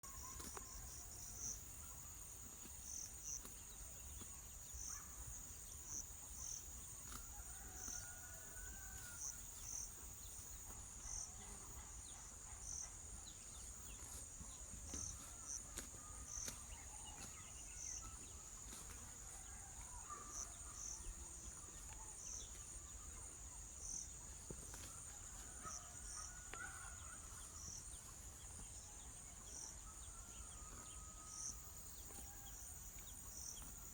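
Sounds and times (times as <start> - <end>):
insect chirps: 0.0 - 11.8.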